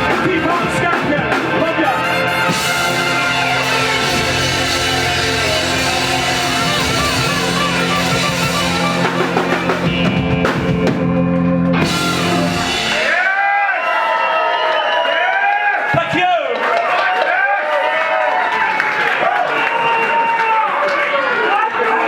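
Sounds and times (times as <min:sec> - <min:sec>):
drum kit: 0:00.0 - 0:13.6
live ska band playing: 0:00.0 - 0:13.6.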